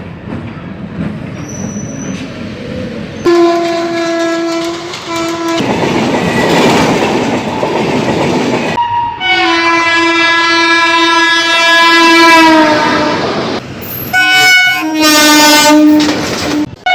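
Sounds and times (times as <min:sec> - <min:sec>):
train rumbling: 0:00.0 - 0:16.9
locomotive horn blast: 0:03.2 - 0:05.7, 0:08.8 - 0:16.9.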